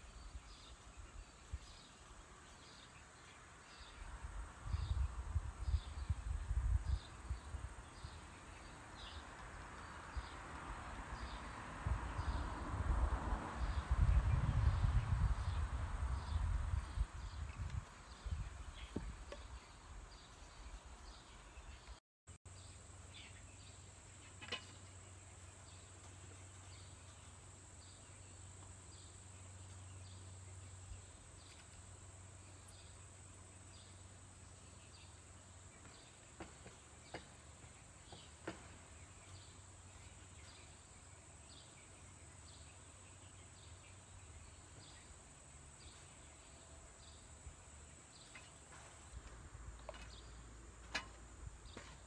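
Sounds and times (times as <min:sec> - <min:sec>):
faint insect chirping: 0:22.5 - 0:52.0.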